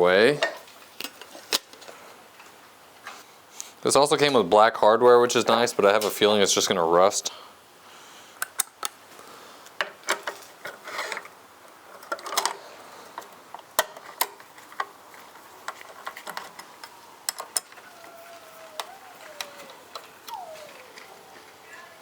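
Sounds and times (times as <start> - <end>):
small metal clicks: 13.2 - 21.2.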